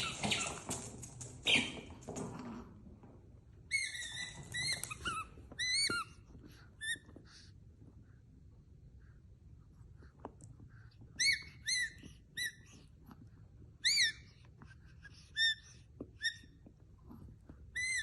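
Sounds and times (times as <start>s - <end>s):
puppy squeaking: 0.0s - 0.8s, 1.4s - 1.9s, 3.7s - 7.2s, 11.2s - 12.8s, 13.8s - 14.5s, 15.1s - 16.6s, 17.7s - 18.0s.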